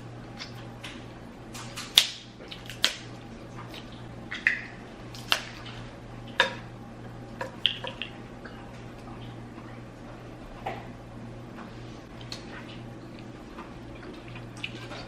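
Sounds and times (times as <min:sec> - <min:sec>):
low steady hum: 0:00.0 - 0:15.0
eating clicks and wet smacks: 0:00.3 - 0:06.7, 0:07.4 - 0:09.8, 0:11.6 - 0:15.0.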